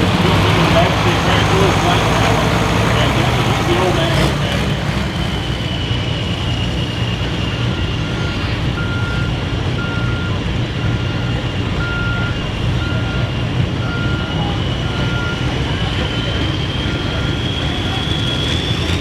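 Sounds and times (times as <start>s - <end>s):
heavy engine rumbling: 0.0s - 19.0s
reversing alarm beeps: 7.9s - 18.5s.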